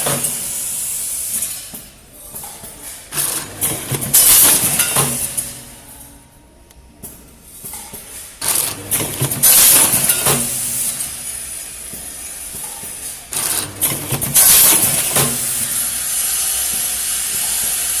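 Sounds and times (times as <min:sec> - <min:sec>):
machine hissing bursts: 0:00.0 - 0:02.0, 0:03.1 - 0:06.0, 0:07.5 - 0:18.0
machine clicks and rattling: 0:02.4 - 0:05.6, 0:07.6 - 0:11.2, 0:12.5 - 0:15.8.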